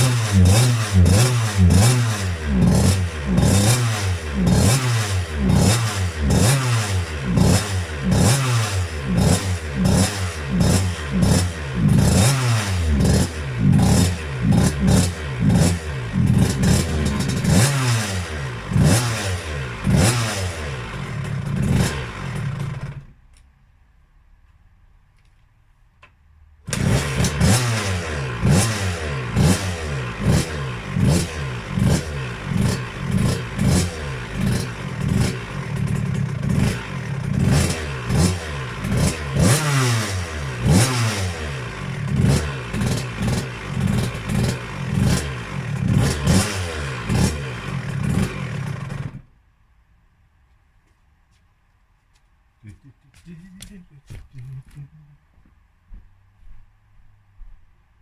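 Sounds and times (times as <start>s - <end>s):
two-stroke engine revving: 0.0s - 23.1s, 26.7s - 49.3s.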